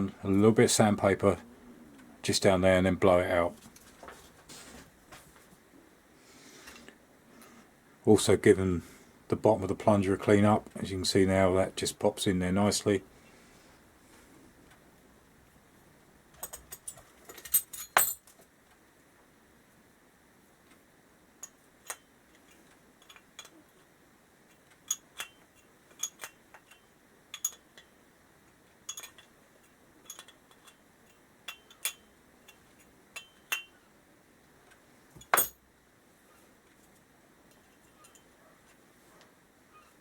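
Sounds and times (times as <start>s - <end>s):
metal parts and tools clinking: 16.4s - 18.4s, 24.9s - 27.9s, 28.9s - 29.4s, 30.0s - 33.8s, 35.2s - 35.6s.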